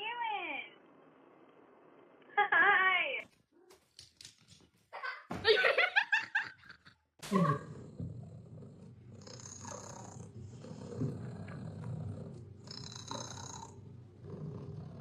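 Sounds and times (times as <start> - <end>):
cat purring: 7.5 - 15.0.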